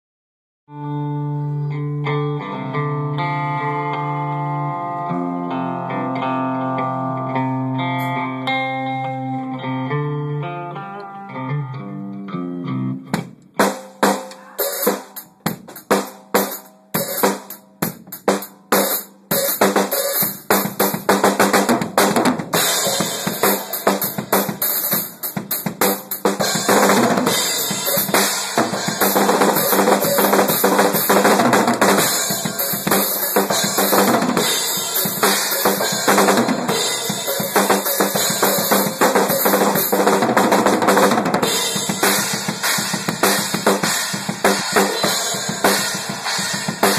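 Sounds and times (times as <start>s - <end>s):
drum kit playing: 13.0s - 46.9s
cymbals washing: 22.6s - 40.5s.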